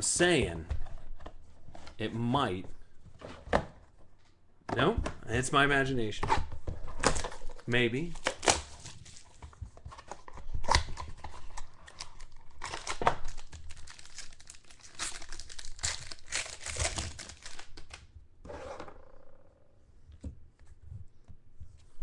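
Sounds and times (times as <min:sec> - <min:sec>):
plastic wrapping crinkling and tearing: 0:10.6 - 0:18.0.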